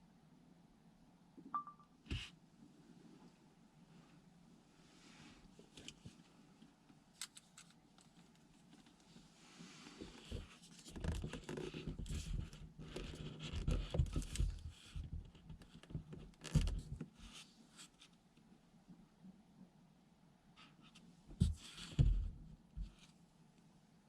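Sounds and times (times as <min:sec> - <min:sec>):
rustling and scraping: 0:07.1 - 0:18.2.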